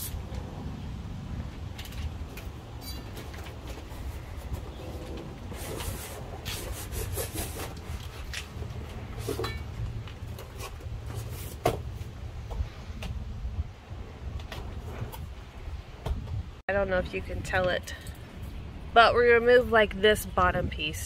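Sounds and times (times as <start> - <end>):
hands rubbing and scraping trim: 2.4 - 11.7.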